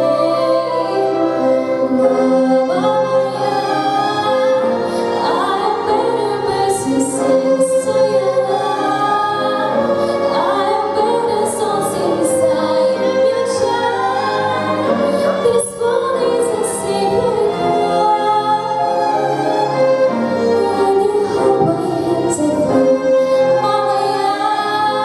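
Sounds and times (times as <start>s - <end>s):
people singing: 0.0s - 18.0s
school orchestra: 0.0s - 25.0s.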